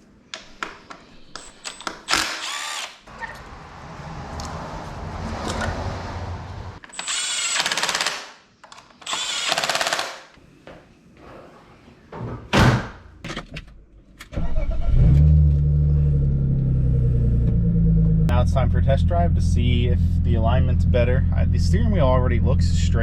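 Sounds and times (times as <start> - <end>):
car engine starting and idling: 3.1 - 6.8, 14.3 - 23.0.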